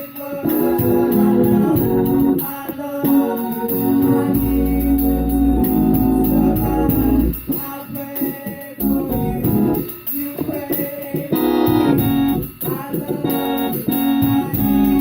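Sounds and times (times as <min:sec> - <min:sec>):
organ playing gospel chords: 0:00.0 - 0:15.0
deep organ bass note: 0:00.8 - 0:02.4, 0:03.7 - 0:07.4, 0:08.8 - 0:09.8, 0:14.0 - 0:15.0.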